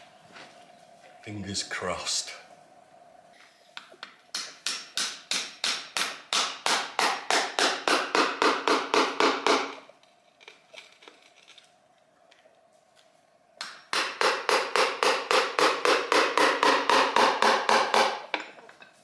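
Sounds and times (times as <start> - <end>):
hammer tapping chisel: 4.0 - 9.8.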